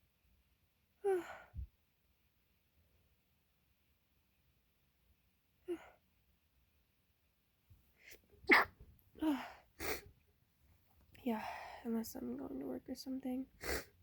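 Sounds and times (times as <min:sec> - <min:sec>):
woman sneezing: 0:08.5 - 0:10.0.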